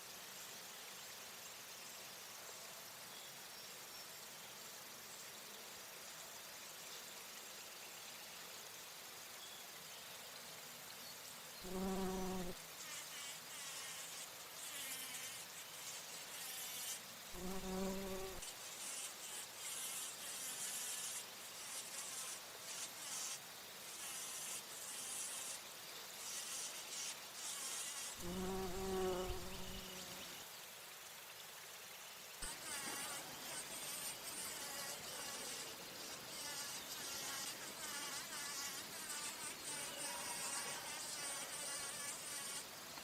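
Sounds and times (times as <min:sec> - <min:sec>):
bumblebee buzzing: 0:11.7 - 0:23.4, 0:24.0 - 0:25.6, 0:26.2 - 0:30.4, 0:32.4 - 0:42.7.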